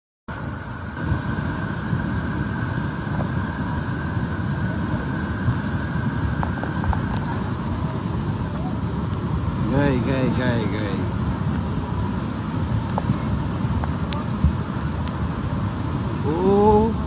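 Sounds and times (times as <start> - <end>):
faint steady whine: 0.3 - 17.0.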